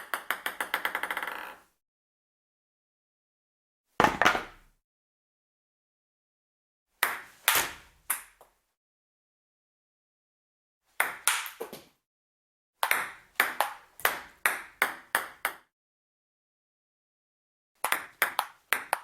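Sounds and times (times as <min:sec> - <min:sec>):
table tennis ball clicking: 0:00.0 - 0:01.6, 0:17.8 - 0:19.0.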